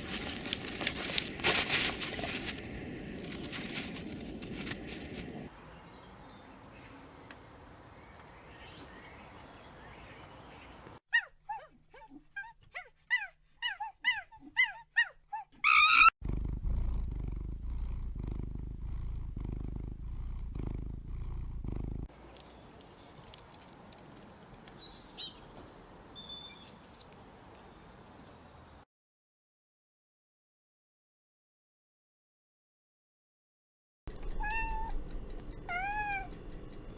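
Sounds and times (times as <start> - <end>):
short high animal calls: 13.1 - 16.1
low pulsing rumble: 16.2 - 22.1.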